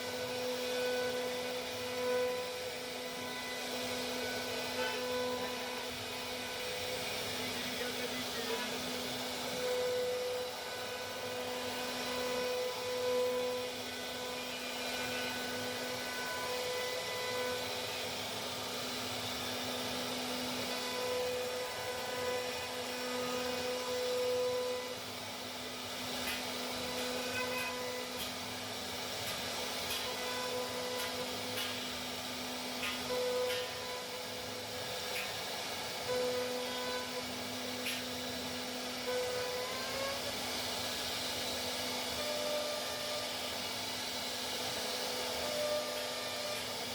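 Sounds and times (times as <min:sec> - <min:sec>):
router spindle whine cutting plastic: 0:00.0 - 0:46.9.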